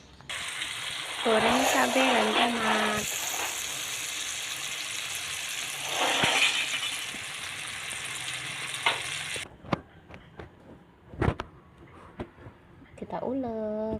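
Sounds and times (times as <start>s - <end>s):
food sizzling in a frying pan: 0.3s - 9.4s.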